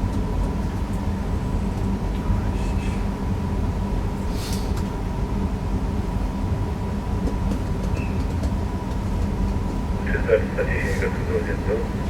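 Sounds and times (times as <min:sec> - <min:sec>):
brief hiss: 0:04.3 - 0:04.7
electrical and mechanical hum: 0:06.9 - 0:12.0
thin steady whine: 0:10.0 - 0:12.0.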